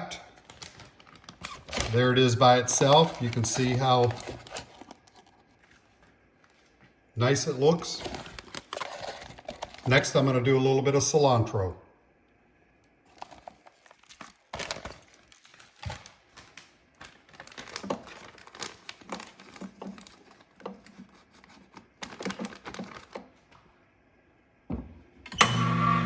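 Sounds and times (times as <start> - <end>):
plastic bag crinkling: 0.2 - 6.8, 7.9 - 10.2, 13.1 - 23.5.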